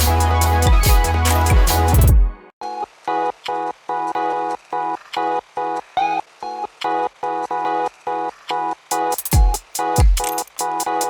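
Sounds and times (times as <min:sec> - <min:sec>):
hi-hats: 0:00.0 - 0:02.2, 0:08.9 - 0:11.0
deep bass kick: 0:00.0 - 0:02.4
electronic music: 0:00.0 - 0:11.0.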